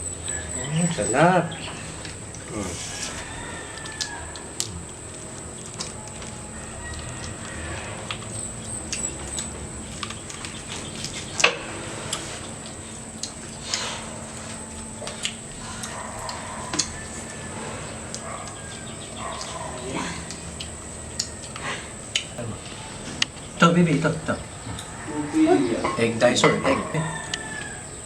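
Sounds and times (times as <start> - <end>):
utensils clinking on dishes: 24.8 - 27.7.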